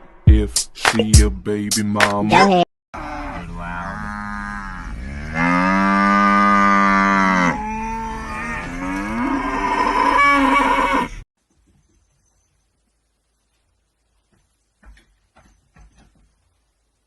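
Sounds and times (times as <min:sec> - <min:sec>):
cow mooing: 0:03.0 - 0:11.2.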